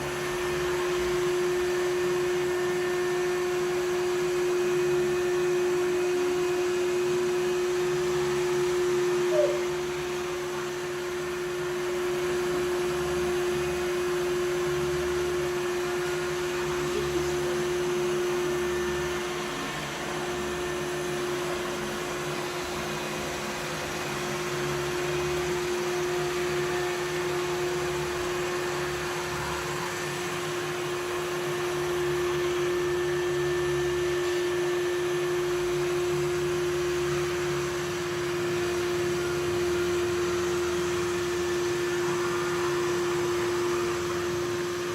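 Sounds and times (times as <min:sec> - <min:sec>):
robot vacuum motor humming: 0:07.1 - 0:32.0.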